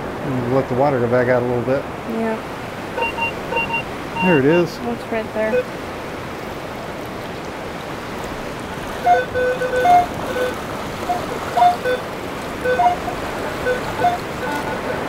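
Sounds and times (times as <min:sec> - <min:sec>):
surf washing: 0:00.0 - 0:15.0
metal detector beeps: 0:03.0 - 0:04.7, 0:09.0 - 0:12.0, 0:12.6 - 0:15.0.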